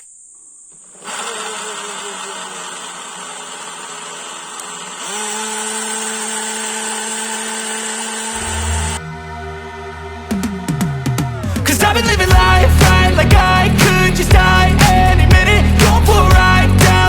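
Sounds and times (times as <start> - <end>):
mixer grinder motor running: 0.8 - 9.0.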